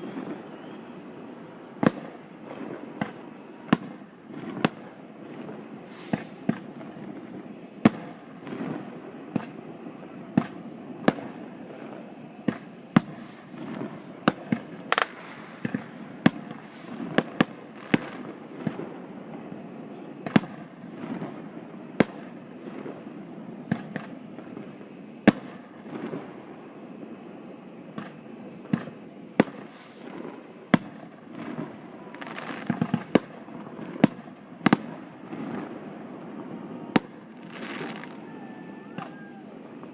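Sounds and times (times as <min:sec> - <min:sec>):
fireworks banging: 0:01.7 - 0:26.5, 0:27.9 - 0:39.1.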